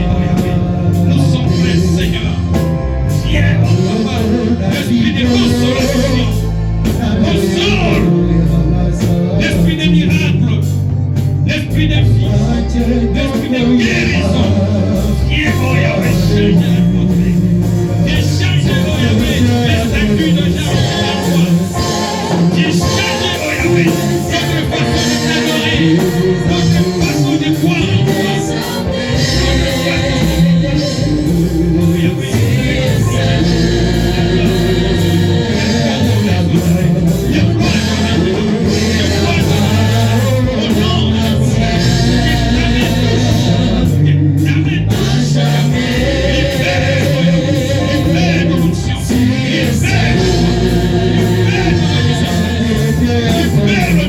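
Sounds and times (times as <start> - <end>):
band accompaniment with steady beat: 0.0 - 54.0
deep bass notes: 0.0 - 54.0
gospel singing: 0.0 - 54.0.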